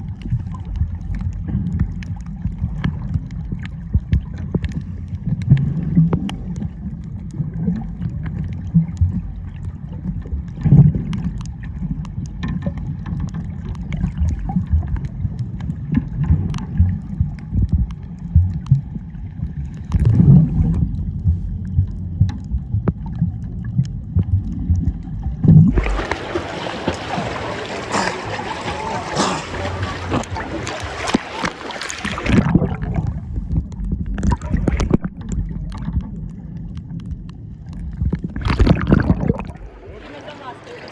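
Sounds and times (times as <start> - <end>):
muffled water sloshing: 0.0 - 40.9
splashing water hiss: 25.8 - 32.4.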